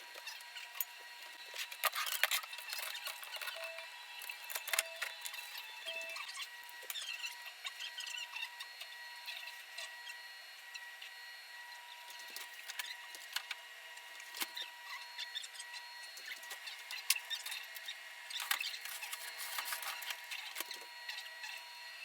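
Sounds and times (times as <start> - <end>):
faint high-pitched tones: 2.7 - 6.5
scratchy rustling: 18.9 - 20.1.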